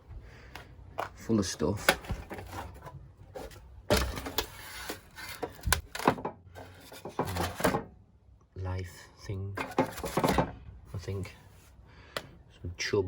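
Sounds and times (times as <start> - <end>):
objects knocking and clunking: 0.9 - 8.0, 9.6 - 10.7.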